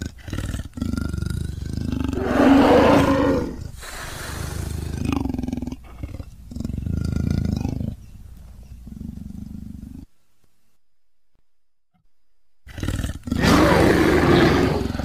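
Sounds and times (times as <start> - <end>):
creature roaring: 2.1 - 3.6, 12.7 - 15.0.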